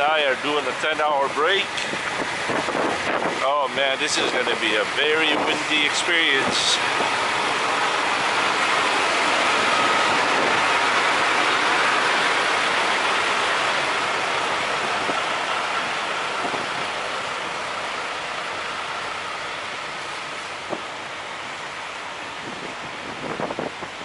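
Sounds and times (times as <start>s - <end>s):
wind rushing over microphone: 1.8s - 3.4s, 8.1s - 11.2s, 14.5s - 17.0s, 22.3s - 24.0s.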